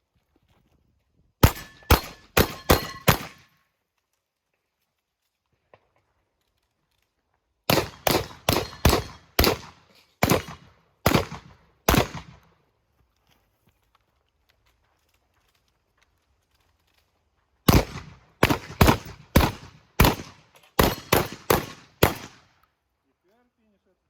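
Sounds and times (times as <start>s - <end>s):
shotgun shots: 1.4s - 3.5s, 7.7s - 12.4s, 17.7s - 22.4s.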